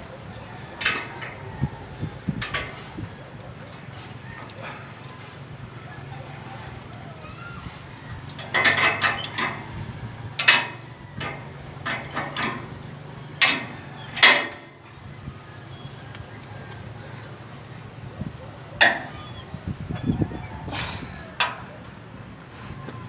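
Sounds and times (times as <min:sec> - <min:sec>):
metallic clicks and clanks: 0:00.4 - 0:05.4, 0:08.1 - 0:14.9, 0:18.8 - 0:19.4, 0:21.4 - 0:22.0.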